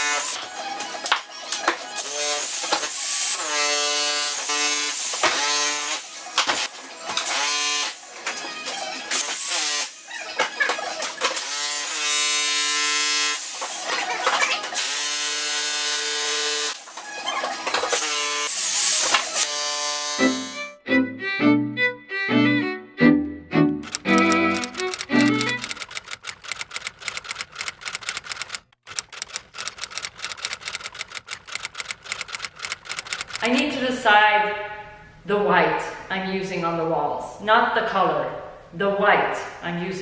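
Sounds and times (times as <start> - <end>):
electric jackhammer: 0.0 - 1.1, 1.8 - 20.8, 23.8 - 33.6.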